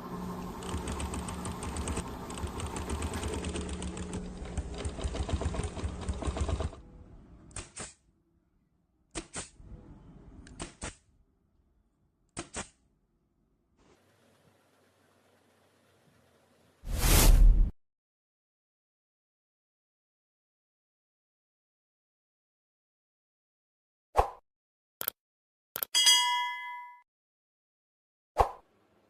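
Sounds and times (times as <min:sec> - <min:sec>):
small machine clattering and humming: 0:00.0 - 0:06.8.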